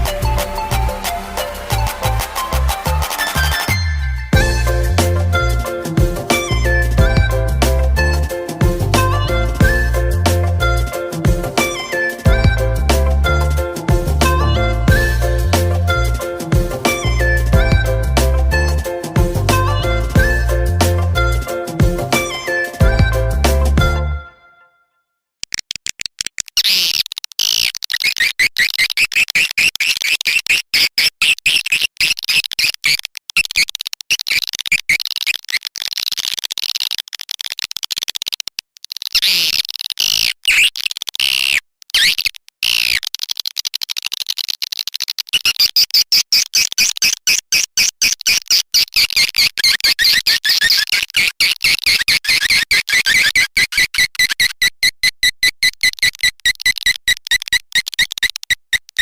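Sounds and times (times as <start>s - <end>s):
high-pitched bird twittering: 45.4s - 59.0s.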